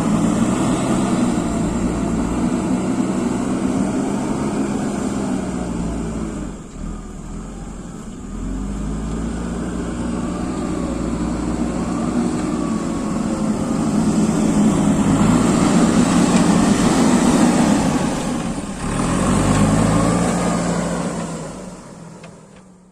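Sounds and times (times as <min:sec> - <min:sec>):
diesel engine under changing load: 0:00.0 - 0:22.9.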